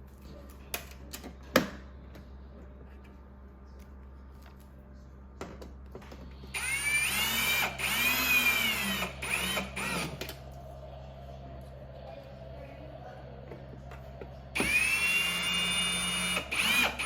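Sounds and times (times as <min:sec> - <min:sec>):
power drill driving screws: 0:06.6 - 0:10.2, 0:14.6 - 0:17.0.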